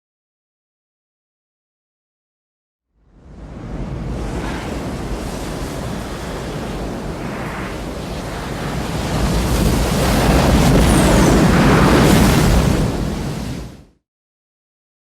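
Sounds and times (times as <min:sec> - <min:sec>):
deep rushing roar: 0:03.2 - 0:13.2.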